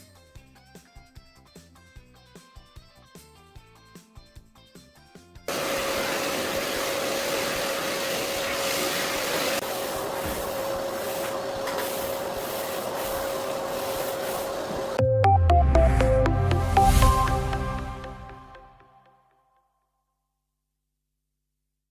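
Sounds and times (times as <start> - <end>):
music: 0.0 - 5.5, 15.0 - 20.3
machine whir with hum: 5.5 - 15.0.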